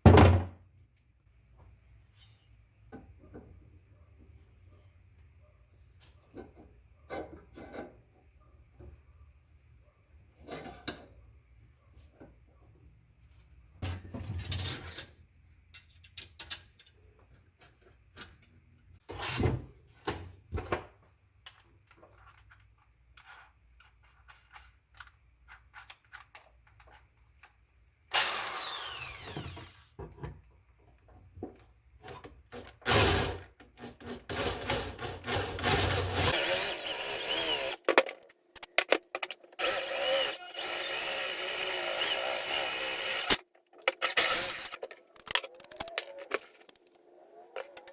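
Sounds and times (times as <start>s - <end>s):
small power drill running: 28.1s - 29.9s, 34.3s - 37.9s, 39.6s - 46.4s.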